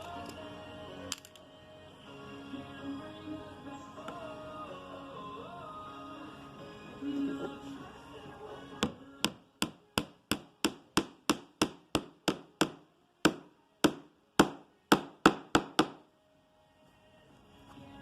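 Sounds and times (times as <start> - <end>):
hammer tapping a nail into wood: 8.8 - 16.0.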